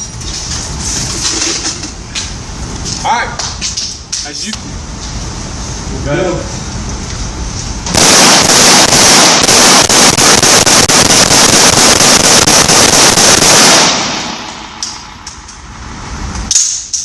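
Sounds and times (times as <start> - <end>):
machine gun firing burst: 7.9 - 14.4.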